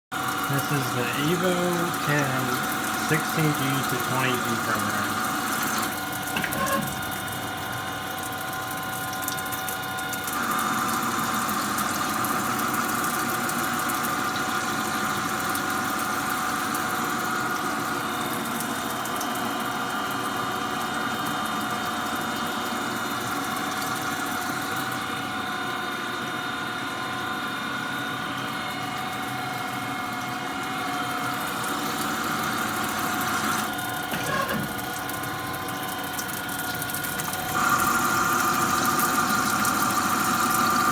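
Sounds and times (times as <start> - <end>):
machine tool machining metal: 0.3 - 7.2, 31.9 - 35.2.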